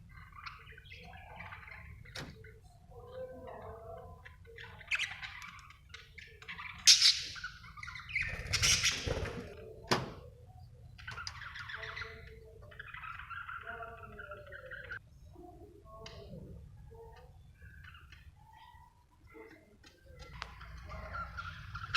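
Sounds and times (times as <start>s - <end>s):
budgerigar chirping: 6.6s - 9.2s.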